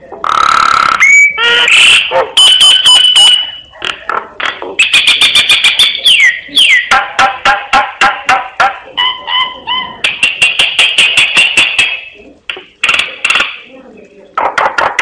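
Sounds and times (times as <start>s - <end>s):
bird singing: 5.5s - 6.9s.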